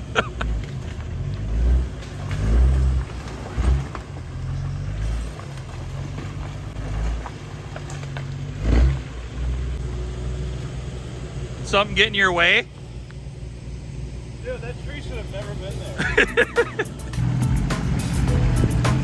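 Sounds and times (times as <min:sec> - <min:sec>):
off-road vehicle engine under load: 0:00.0 - 0:19.0
heavy low thumps: 0:16.0 - 0:19.0.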